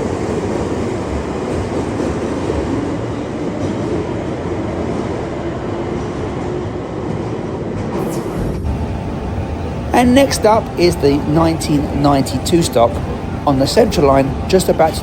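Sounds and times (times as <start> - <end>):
train wheels rumbling on rail: 0.0 - 15.0
train motor hum: 7.8 - 15.0.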